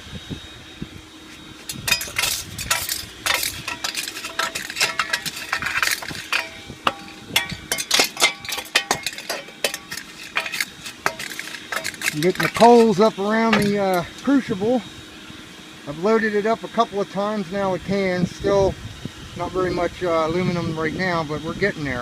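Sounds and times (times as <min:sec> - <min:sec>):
aluminum cans clinking: 0:01.7 - 0:14.0.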